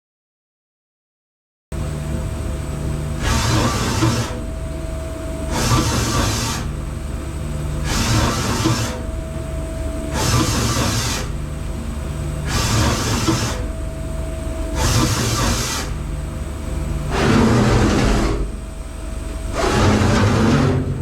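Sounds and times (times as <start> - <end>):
steady machine hum: 1.8 - 21.0
machine axis travel rushing: 17.1 - 18.6, 19.5 - 21.0.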